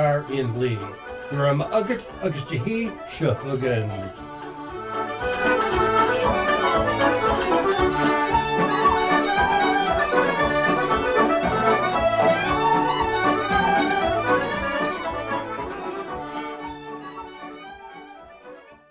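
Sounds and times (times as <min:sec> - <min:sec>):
instrumental irish traditional tune: 0:00.0 - 0:18.9.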